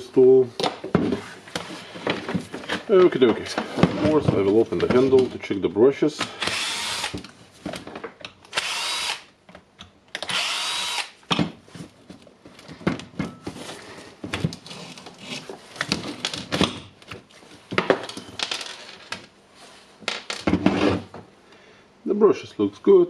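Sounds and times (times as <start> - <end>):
electric screwdriver whirring: 6.4 - 7.2, 8.5 - 9.3, 10.2 - 11.2.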